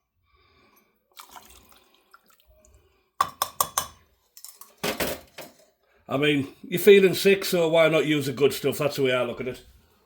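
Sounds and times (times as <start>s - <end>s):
liquid glugging: 1.1s - 2.8s
liquid pouring from a bottle: 1.1s - 2.8s.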